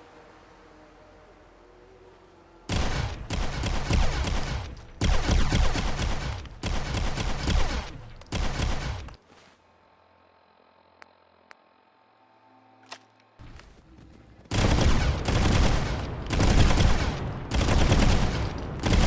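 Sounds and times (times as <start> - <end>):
pistol rapid shots: 2.7 - 9.1, 14.5 - 19.0.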